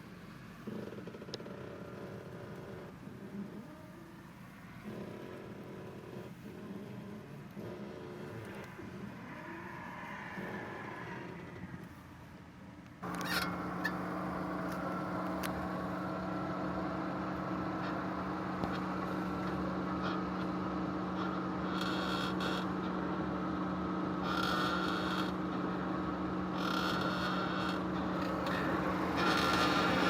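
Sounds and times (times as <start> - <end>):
car hum: 13.0 - 20.5, 27.7 - 30.0
car wheel creaking: 26.6 - 30.0.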